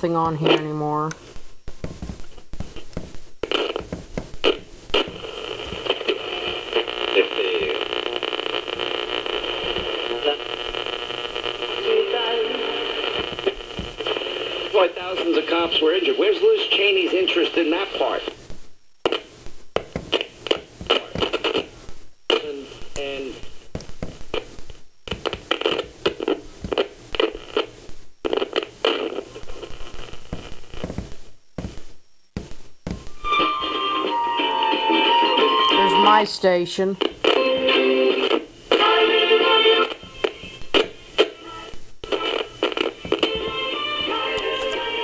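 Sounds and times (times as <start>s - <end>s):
faint broadcast voices: 0.0s - 1.2s, 4.4s - 19.4s, 20.1s - 21.7s, 22.3s - 23.6s, 35.1s - 37.6s
voice on clock radio speaker: 0.0s - 1.2s, 5.8s - 8.2s, 22.3s - 23.5s, 35.4s - 37.1s
radio static and hiss: 0.0s - 45.0s.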